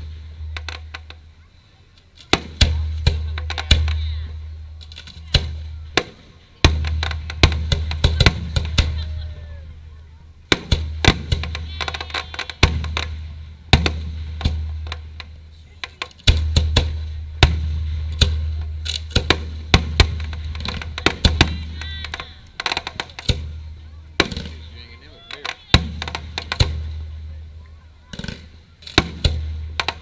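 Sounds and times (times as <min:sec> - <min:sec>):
sharp cracking bangs: 0:00.0 - 0:01.2, 0:02.2 - 0:09.1, 0:10.5 - 0:27.3, 0:28.1 - 0:30.0
firework booms: 0:05.2 - 0:09.3, 0:10.5 - 0:30.0.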